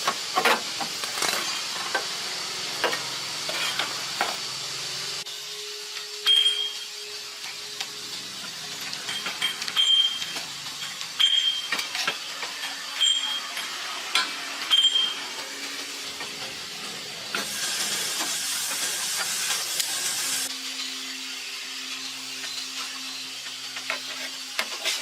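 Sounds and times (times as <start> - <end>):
pressurised gas hissing: 13.9 - 20.5.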